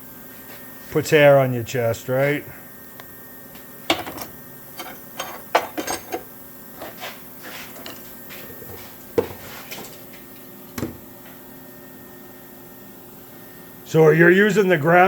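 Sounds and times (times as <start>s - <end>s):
faint steady hum: 0.0s - 15.0s
metal clanking and clinking: 3.9s - 6.2s.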